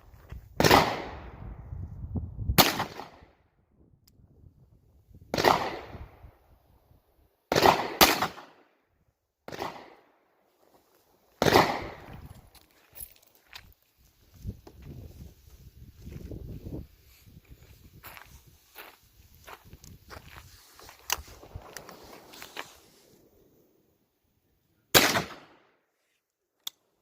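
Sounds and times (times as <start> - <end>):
gunshots with echo: 2.6 - 3.3, 5.4 - 6.0, 7.5 - 8.6, 11.4 - 12.1, 24.9 - 25.7.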